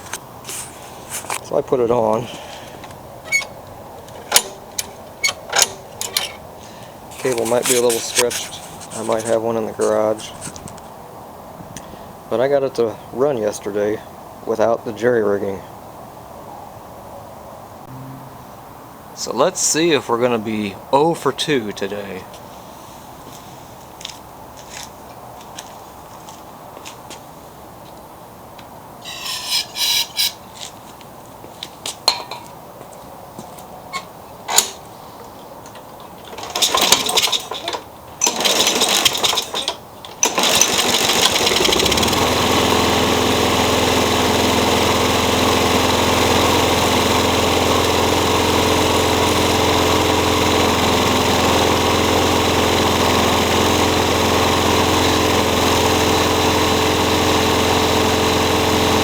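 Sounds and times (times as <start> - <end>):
lawn mower engine running: 0.0 - 10.7, 29.0 - 30.5, 36.2 - 59.0
starter rope pulls and clatter: 0.0 - 10.8, 35.7 - 59.0.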